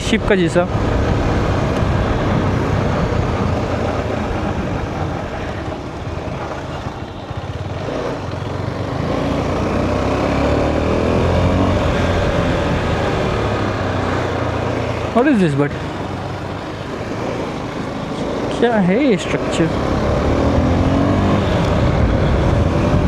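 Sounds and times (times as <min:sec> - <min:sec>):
wind rumble on microphone: 0:00.0 - 0:07.8, 0:19.8 - 0:23.0
motorcycle engine: 0:00.0 - 0:23.0.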